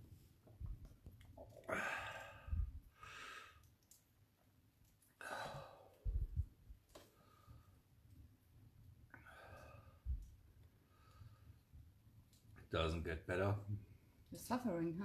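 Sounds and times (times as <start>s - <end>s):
man breathing hard and sighing: 1.6s - 3.6s, 5.2s - 6.4s.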